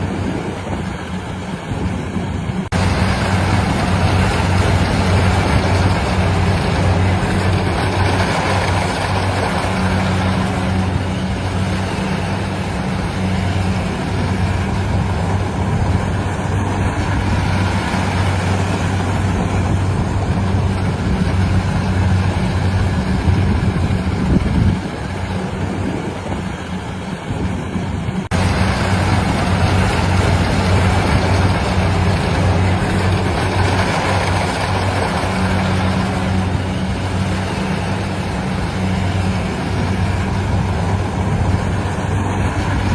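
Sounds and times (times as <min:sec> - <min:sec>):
harvesting machine engine humming: 0:00.0 - 0:42.9.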